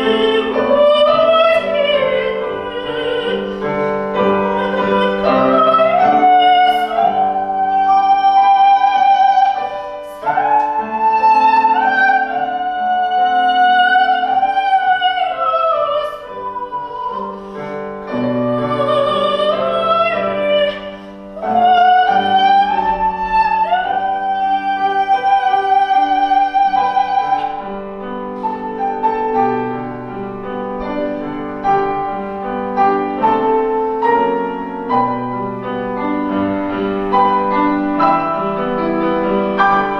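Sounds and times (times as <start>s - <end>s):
soprano singing with vibrato: 0.0s - 27.8s
piano accompaniment: 0.0s - 39.9s.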